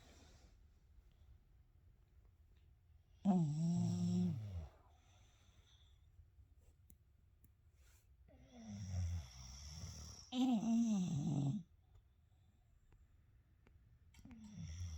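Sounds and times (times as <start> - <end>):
dog snoring: 3.3 - 4.8, 8.4 - 11.7, 14.4 - 14.9.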